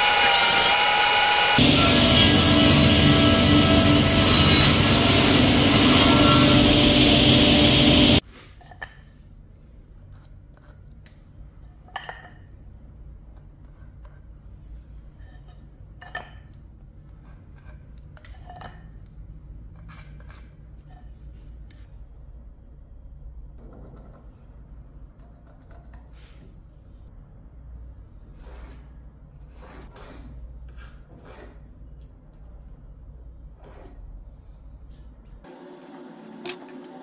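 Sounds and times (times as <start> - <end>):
woodworking power tool whining: 0.0 - 8.2, 35.5 - 37.0.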